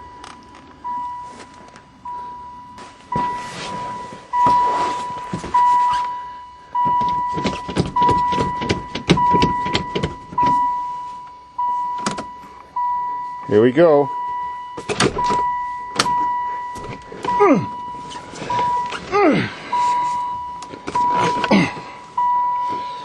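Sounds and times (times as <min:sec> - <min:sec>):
dashboard warning chime dinging: 0:00.0 - 0:23.0
rustling: 0:02.7 - 0:06.3.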